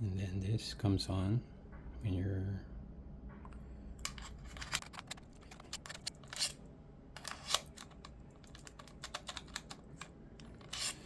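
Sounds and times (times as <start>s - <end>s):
small plastic clicks and rattles: 7.2s - 11.0s.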